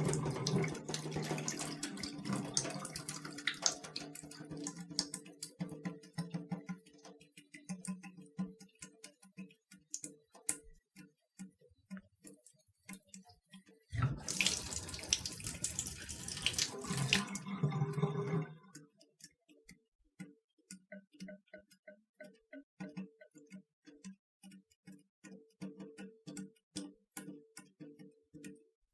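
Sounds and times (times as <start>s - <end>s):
running water from tap: 0.0s - 5.2s, 14.0s - 18.6s
water dripping into water: 0.0s - 19.8s.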